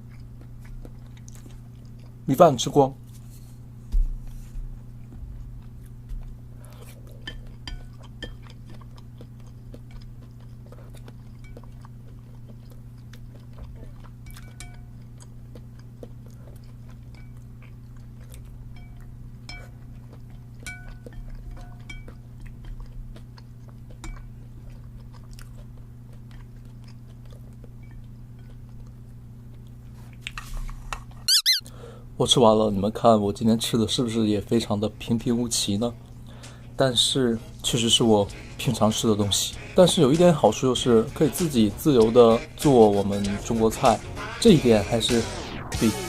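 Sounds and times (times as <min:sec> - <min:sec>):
person chewing: 0:00.0 - 0:02.3, 0:05.0 - 0:31.7
utensils clinking against bowl: 0:20.6 - 0:22.2.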